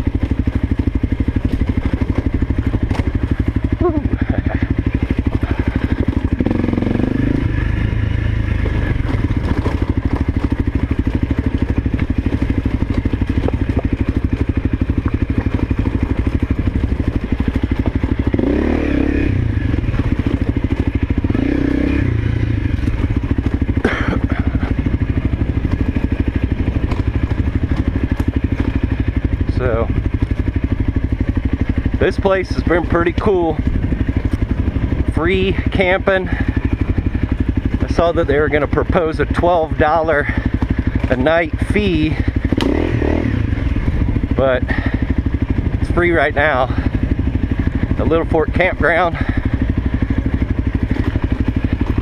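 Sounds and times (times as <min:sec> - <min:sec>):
motorcycle engine revving: 0:00.0 - 0:52.0.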